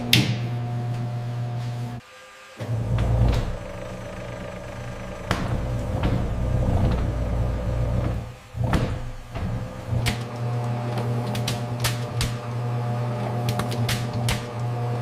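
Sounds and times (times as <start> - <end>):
machinery humming: 0.0 - 15.0
sharp clicks and knocks: 13.5 - 14.5.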